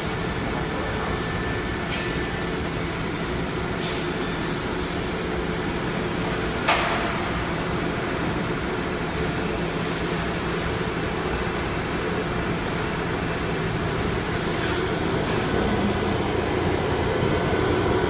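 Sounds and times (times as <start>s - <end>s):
low machinery hum: 11.4s - 18.0s.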